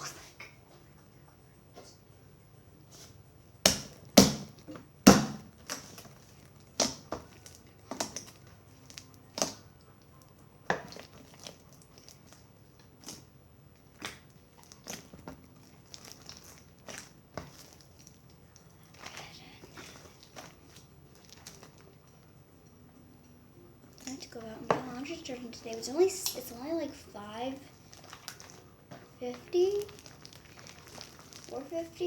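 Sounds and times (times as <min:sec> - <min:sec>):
slime kneaded by hand popping: 0:03.6 - 0:09.7, 0:10.7 - 0:18.4.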